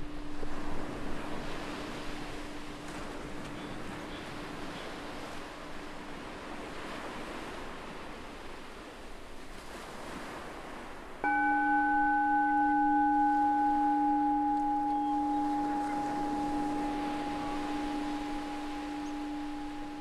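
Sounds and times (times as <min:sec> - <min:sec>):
meditation bell ringing: 0:00.0 - 0:04.5, 0:11.2 - 0:20.0
ocean waves washing on beach: 0:00.0 - 0:20.0.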